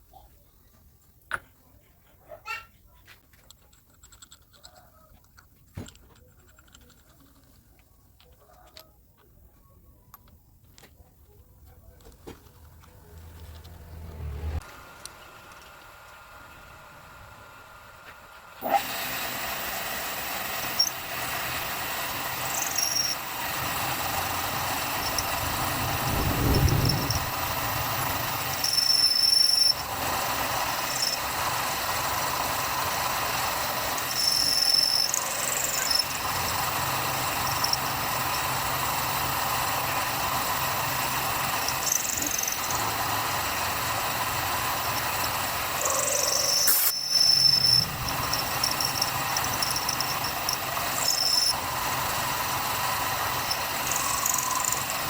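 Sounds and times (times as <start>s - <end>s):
machine tool motor running: 12.7s - 55.0s
short high squeals: 45.8s - 51.6s.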